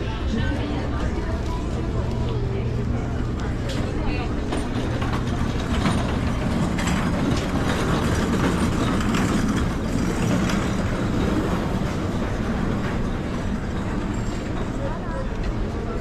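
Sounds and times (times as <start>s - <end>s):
train rumbling on rails: 0.0s - 16.0s
wheels clattering over track: 3.2s - 16.0s.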